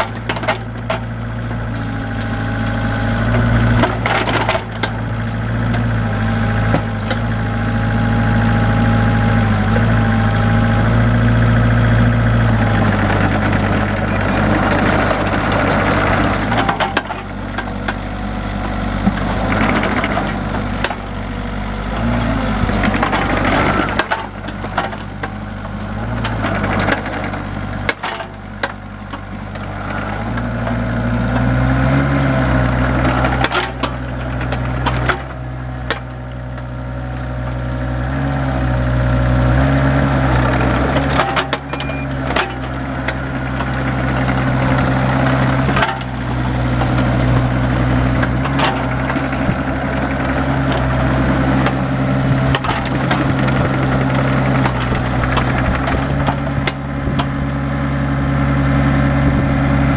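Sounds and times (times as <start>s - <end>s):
excavator diesel engine: 0.0s - 59.9s
knocks and clunks: 3.2s - 5.0s.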